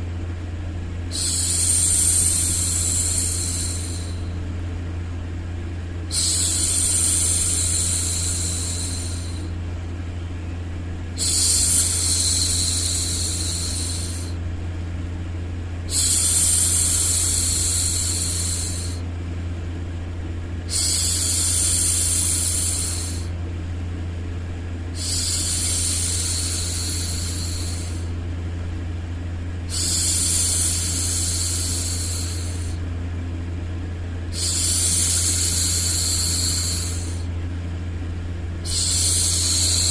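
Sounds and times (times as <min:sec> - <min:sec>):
low white-noise hum: 0:00.0 - 0:39.9.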